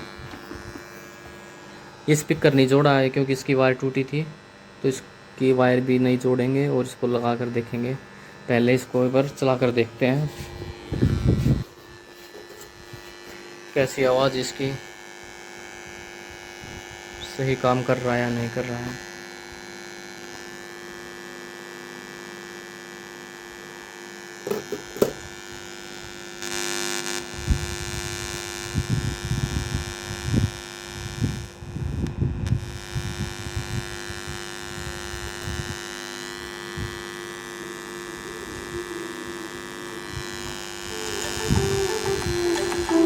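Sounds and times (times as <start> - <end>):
electrical mains hum: 0.0 - 43.0
music from speakers: 41.0 - 43.0.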